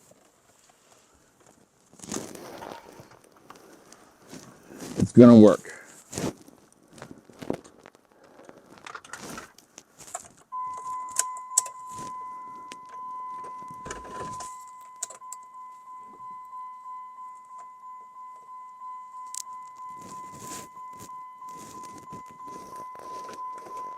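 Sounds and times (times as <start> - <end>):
high-pitched vehicle warning tone: 10.5 - 23.9
ignition clicks: 10.6 - 15.5.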